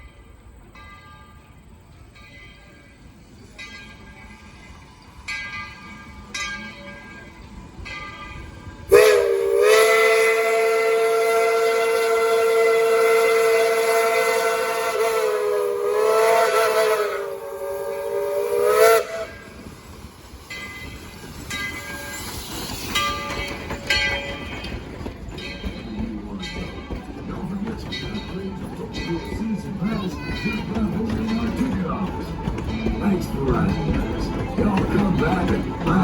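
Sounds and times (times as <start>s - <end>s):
faint train sounds: 0.0s - 36.0s
steam locomotive chime whistle: 8.0s - 19.8s.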